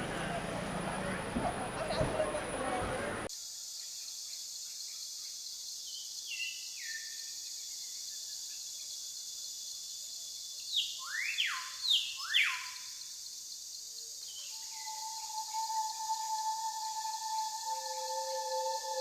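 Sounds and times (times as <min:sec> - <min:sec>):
steady high hiss: 0:12.8 - 0:19.0.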